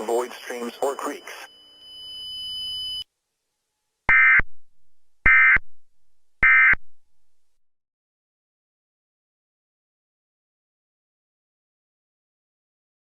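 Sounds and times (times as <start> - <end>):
steady high tone: 0.0 - 3.0.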